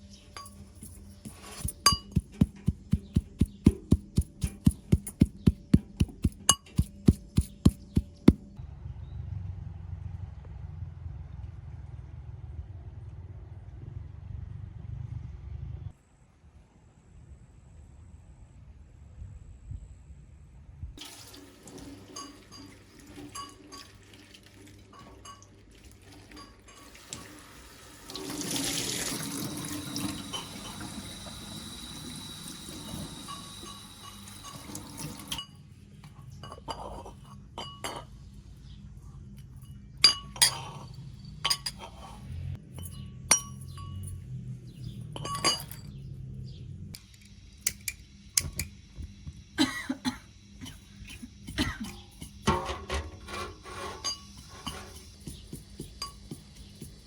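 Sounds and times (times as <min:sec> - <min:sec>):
dishes and glass clinking: 0:00.3 - 0:03.2, 0:22.1 - 0:24.1, 0:24.9 - 0:25.6, 0:26.3 - 0:27.3, 0:30.2 - 0:30.8, 0:32.9 - 0:35.7, 0:36.3 - 0:38.2, 0:39.6 - 0:42.2, 0:42.8 - 0:44.2, 0:45.1 - 0:46.0, 0:51.6 - 0:56.4
tap water running into sink: 0:21.0 - 0:35.4.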